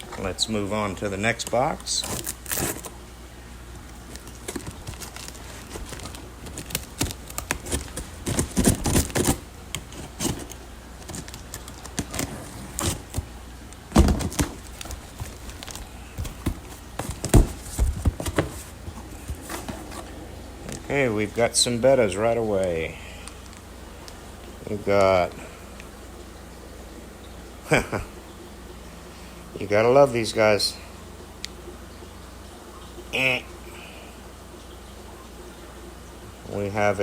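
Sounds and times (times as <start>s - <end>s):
box being opened and handled: 1.4s - 3.0s, 4.0s - 13.3s, 13.9s - 20.9s
heavy thumps: 13.9s - 20.1s.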